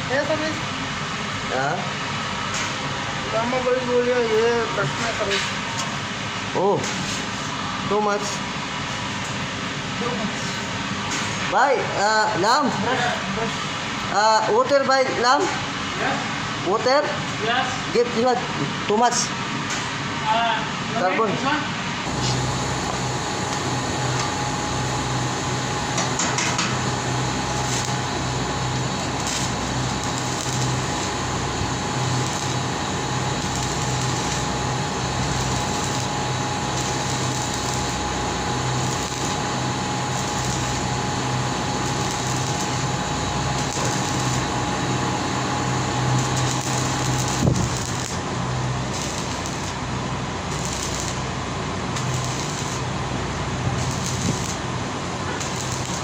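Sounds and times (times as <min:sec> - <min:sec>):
mechanical hum and whir: 0:00.0 - 0:56.0
thin steady whine: 0:22.0 - 0:56.0.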